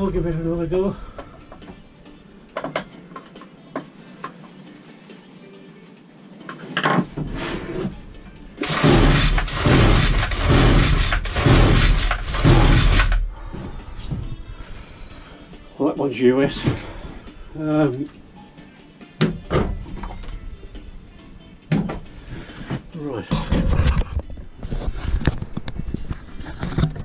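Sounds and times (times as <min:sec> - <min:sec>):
strimmer recoil starter pulled: 0:08.6 - 0:13.2.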